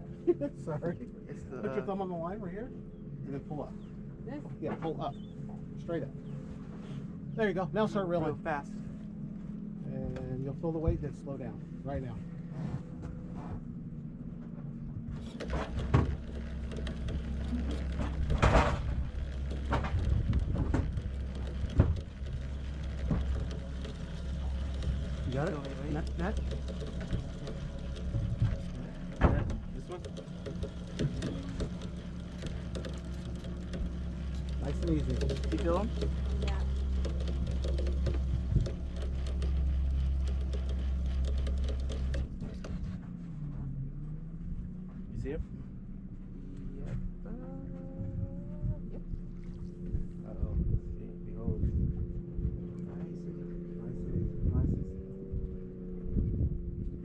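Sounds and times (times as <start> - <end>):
low steady rumble: 0.0 - 57.0
steady low hum: 0.0 - 57.0
handling knocks and thumps: 15.1 - 43.2
fishing reel cranking: 15.2 - 42.8.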